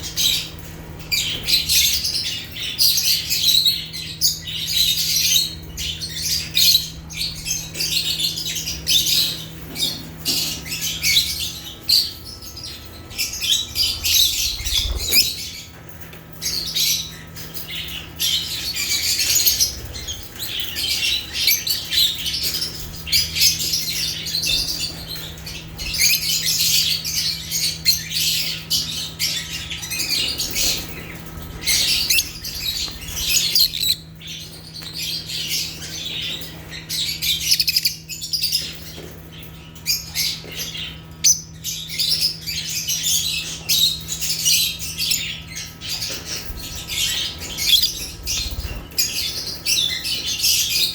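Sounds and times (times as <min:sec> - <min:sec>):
lovebirds chirping and squawking: 0:00.0 - 0:50.9.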